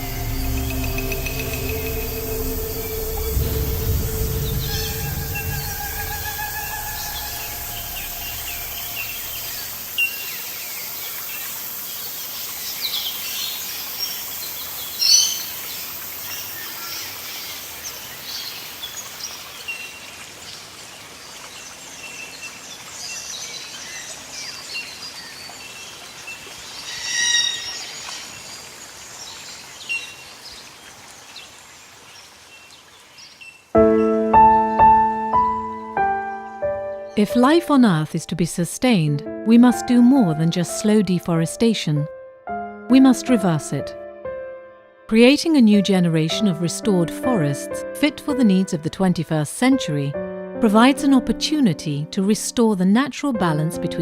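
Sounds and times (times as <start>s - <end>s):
steady high hiss: 0.0s - 19.7s
birds chirping and calling: 4.4s - 10.9s.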